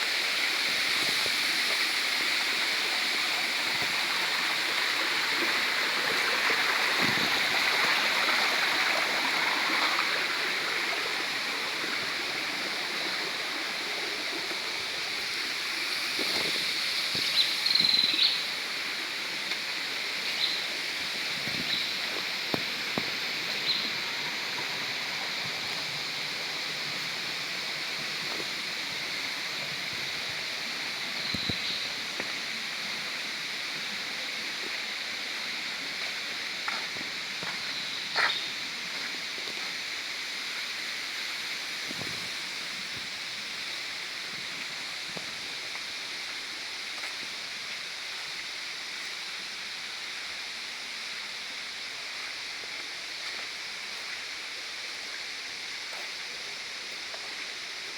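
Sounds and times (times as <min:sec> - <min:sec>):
waterfall rushing: 0:00.0 - 0:33.8.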